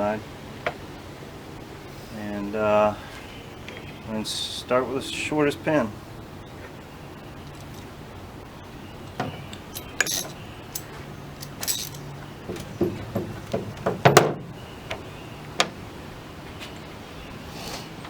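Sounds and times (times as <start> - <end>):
steel pins clinking: 7.4 - 8.0, 9.0 - 14.4.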